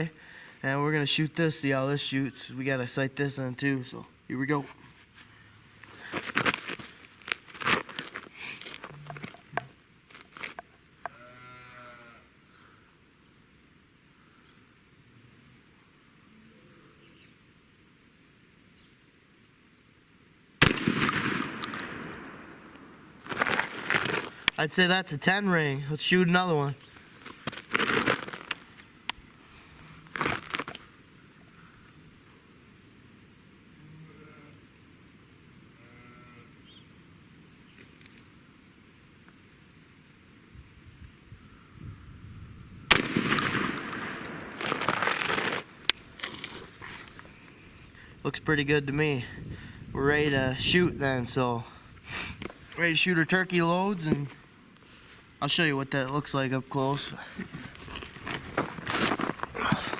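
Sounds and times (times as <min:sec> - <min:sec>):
shotgun shot with echo: 0:20.6 - 0:23.0, 0:42.9 - 0:44.9.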